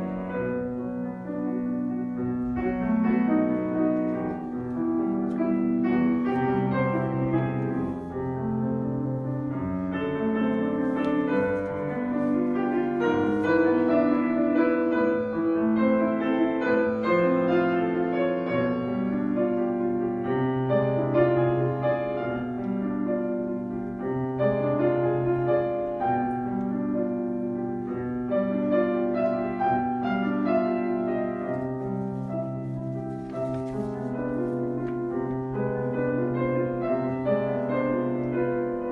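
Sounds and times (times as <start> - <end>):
solo piano classical piece: 0.0 - 38.9.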